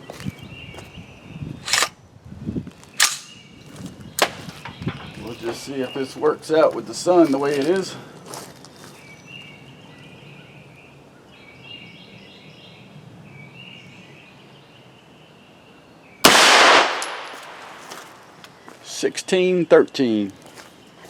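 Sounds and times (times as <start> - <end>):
rifle shot: 16.2 - 18.2.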